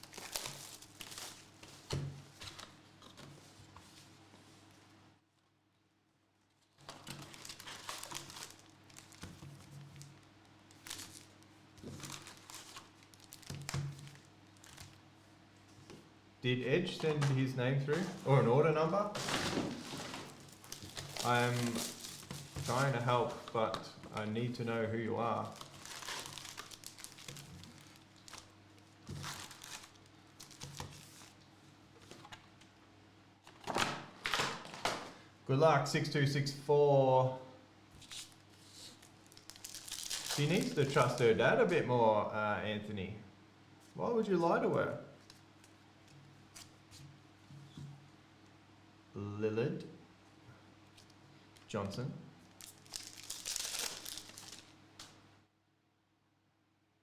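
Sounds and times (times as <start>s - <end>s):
plastic packaging crinkling and tearing: 0.0s - 2.8s, 6.7s - 15.0s, 16.9s - 24.6s, 25.2s - 31.4s, 38.0s - 41.4s, 52.4s - 55.2s.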